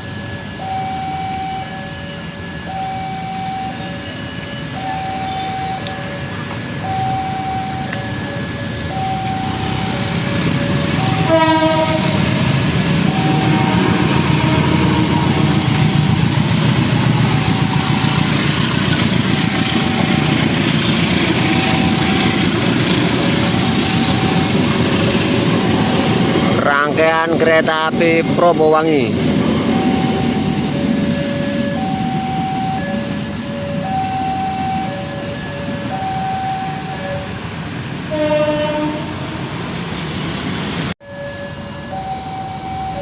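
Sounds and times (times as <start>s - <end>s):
level-crossing warning siren: 0.0s - 43.0s
train rumbling past: 0.0s - 43.0s
train horn blast: 11.0s - 18.3s, 38.1s - 39.7s.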